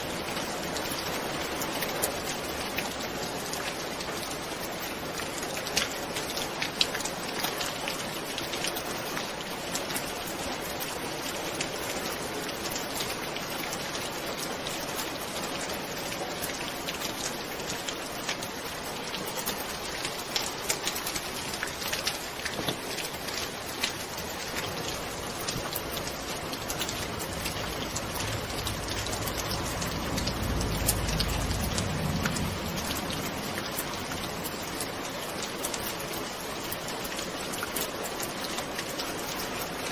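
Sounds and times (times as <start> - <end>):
steady rain: 0.0 - 39.9
soft thunder rumble: 24.3 - 36.1.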